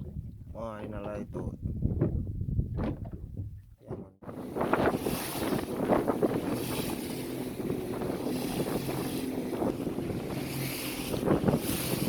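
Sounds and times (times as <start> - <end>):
sea water around hull: 0.0 - 12.0
wind buffeting microphone: 0.0 - 12.0
boat motor running: 2.8 - 12.0.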